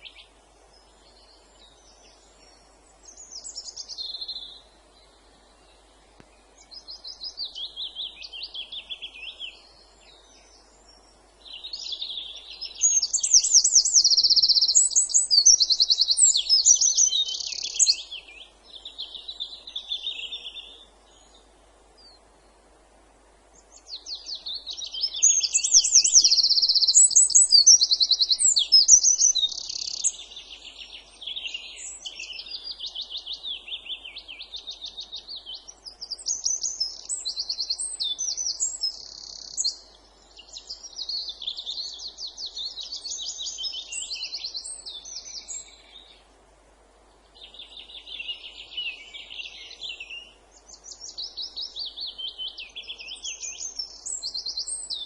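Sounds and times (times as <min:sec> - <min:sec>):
songbird trilling: 0:06.6 - 0:20.8, 0:23.8 - 0:46.1.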